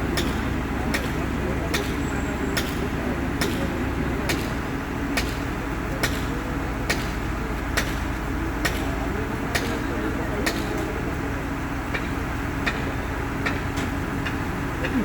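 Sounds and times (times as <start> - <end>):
low machine rumble: 11.2 - 15.0.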